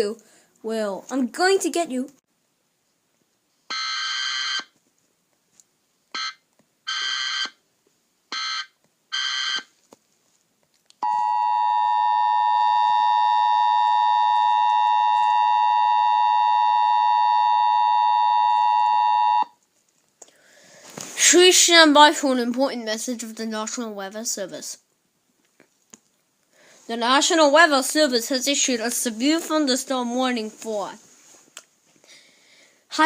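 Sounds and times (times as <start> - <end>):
steady two-tone alert signal: 11.0 - 19.5.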